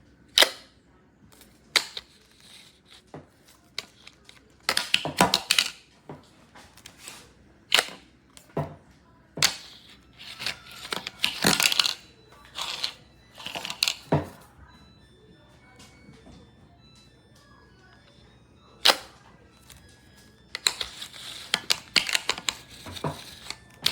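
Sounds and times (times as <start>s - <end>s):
handling clicks and knocks: 9.4s - 14.4s, 18.9s - 23.9s.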